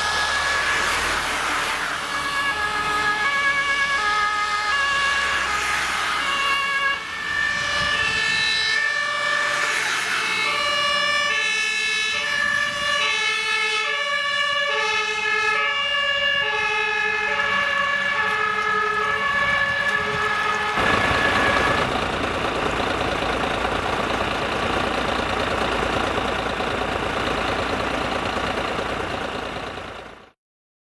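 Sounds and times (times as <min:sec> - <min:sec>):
fire engine two-tone sirens: 0:00.0 - 0:30.4.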